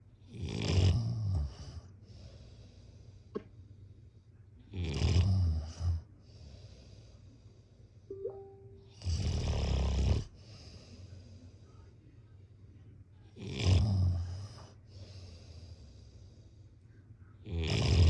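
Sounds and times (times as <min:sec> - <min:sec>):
brief faint tone: 0:08.1 - 0:09.1.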